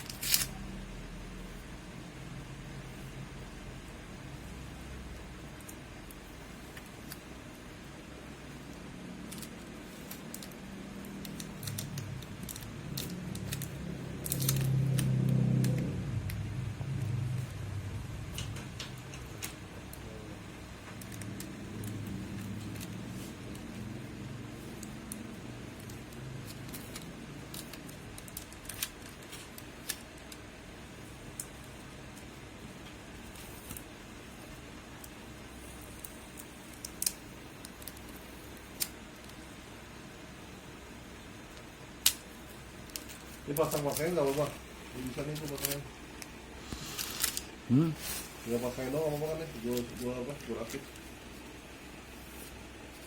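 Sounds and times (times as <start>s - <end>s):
low hum: 0.0s - 27.8s.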